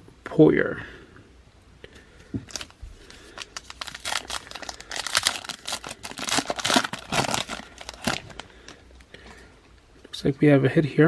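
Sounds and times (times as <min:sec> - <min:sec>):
card pack wrapper crinkling and tearing: 0:02.5 - 0:09.1.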